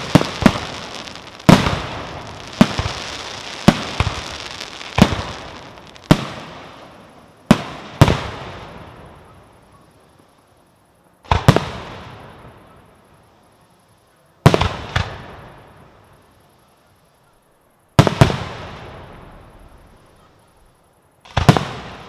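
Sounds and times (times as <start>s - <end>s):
fireworks bursting with echoing rumble: 0.0s - 10.3s, 11.2s - 12.8s, 14.4s - 16.2s, 18.0s - 20.1s, 21.2s - 22.0s.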